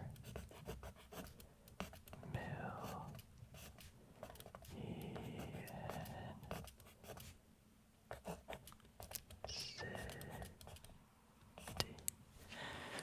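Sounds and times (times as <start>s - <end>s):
pencil writing on paper: 0.2s - 7.4s, 8.1s - 10.9s, 11.6s - 12.0s
light pencil taps: 11.6s - 12.2s.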